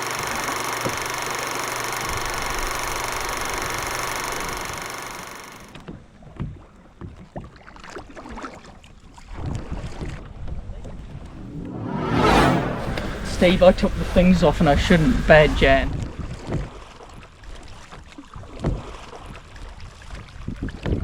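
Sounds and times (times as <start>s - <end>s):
kayak paddles splashing water: 6.0s - 10.3s
steady rushing hiss: 12.7s - 16.0s.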